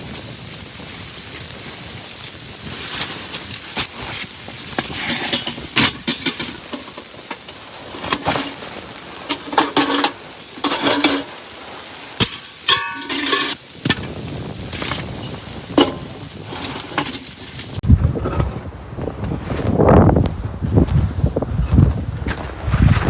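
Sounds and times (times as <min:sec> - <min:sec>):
metal cookware clinking and scraping: 0:00.8 - 0:01.5, 0:04.8 - 0:08.6, 0:09.3 - 0:11.4, 0:12.2 - 0:17.8.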